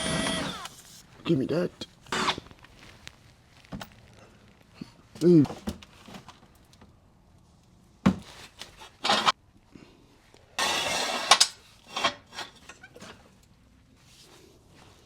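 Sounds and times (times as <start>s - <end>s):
harsh metal scrape: 10.6s - 13.0s.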